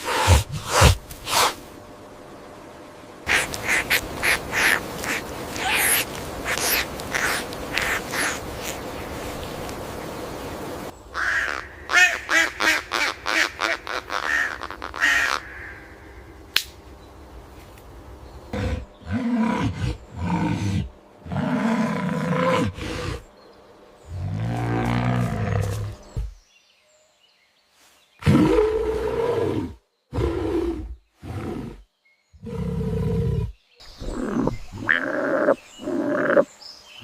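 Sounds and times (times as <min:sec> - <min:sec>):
animal calling: 0:03.3 - 0:08.8, 0:33.9 - 0:36.5
long low animal growl: 0:18.5 - 0:23.3, 0:24.1 - 0:26.4.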